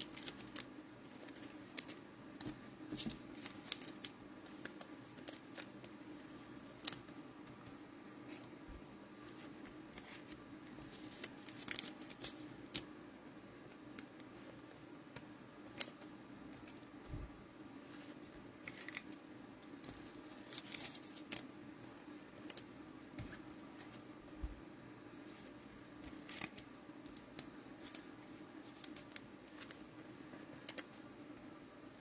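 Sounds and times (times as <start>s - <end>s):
cards and wrappers crinkling: 0.0s - 2.0s, 2.9s - 6.0s, 9.2s - 12.9s, 17.8s - 21.5s, 25.2s - 31.0s
steady low hum: 0.0s - 32.0s.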